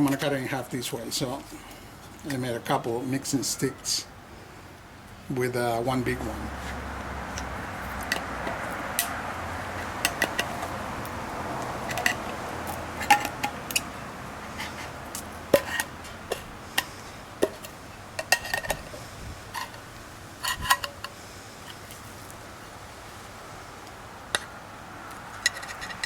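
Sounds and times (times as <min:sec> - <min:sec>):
tools and containers clinking: 0:11.8 - 0:13.9, 0:25.4 - 0:26.0.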